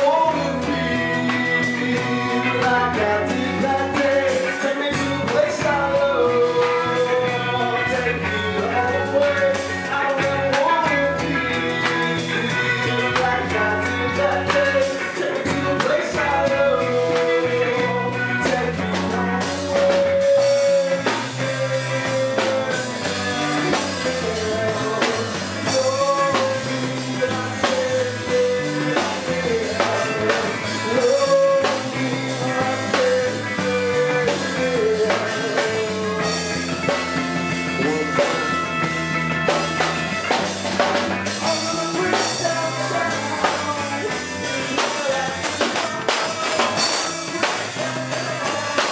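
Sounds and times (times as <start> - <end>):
person singing long notes: 0.0 - 38.8
drum kit: 0.0 - 48.9
rock band playing live: 0.0 - 48.9.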